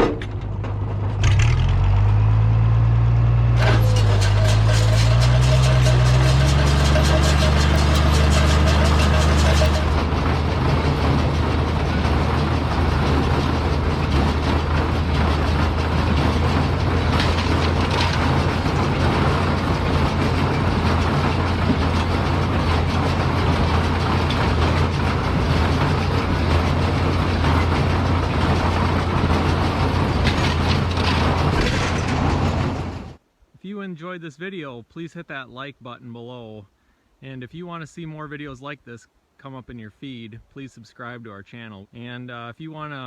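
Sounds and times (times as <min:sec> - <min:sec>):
tractor engine humming: 0:00.0 - 0:43.0
hay baler clattering: 0:03.6 - 0:33.2.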